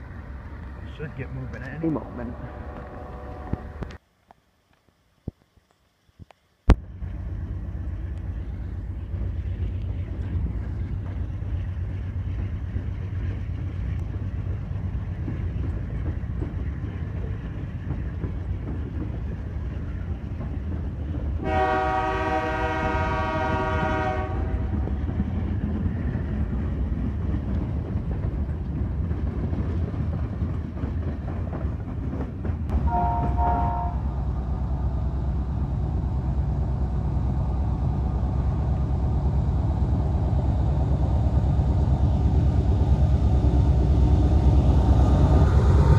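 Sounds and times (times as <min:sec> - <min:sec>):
freight train rumbling past: 0:00.0 - 0:04.0, 0:06.8 - 0:45.9
locomotive air horn blast: 0:21.4 - 0:24.6, 0:32.9 - 0:34.1.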